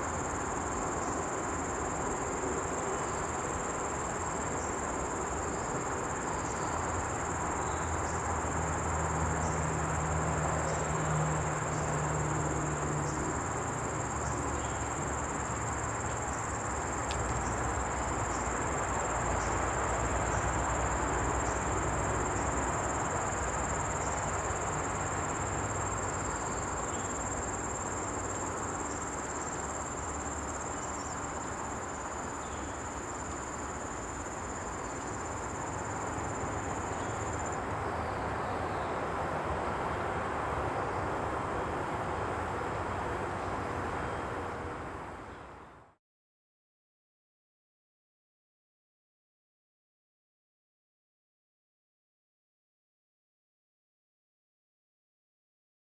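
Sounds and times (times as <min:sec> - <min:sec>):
cricket trilling: 0:00.0 - 0:38.9.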